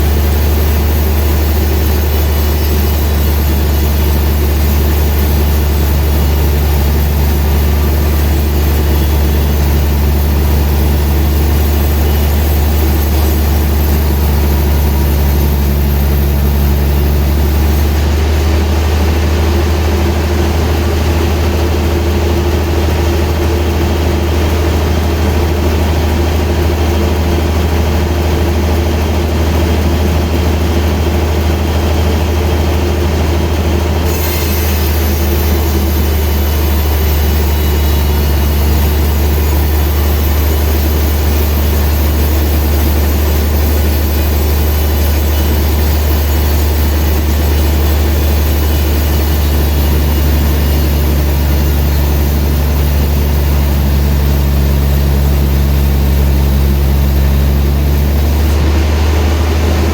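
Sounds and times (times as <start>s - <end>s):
sawmill machinery humming: 0.0s - 59.9s
high hiss: 34.1s - 58.6s.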